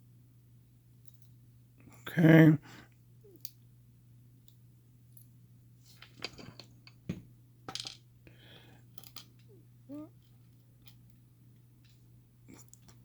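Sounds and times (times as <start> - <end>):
small metal lock parts clicking: 9.0 - 9.5.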